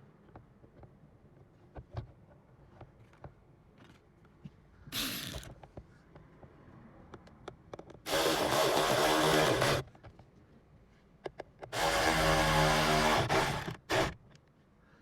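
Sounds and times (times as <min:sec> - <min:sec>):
cordless drill driving screws: 0:08.1 - 0:09.9, 0:11.7 - 0:14.2.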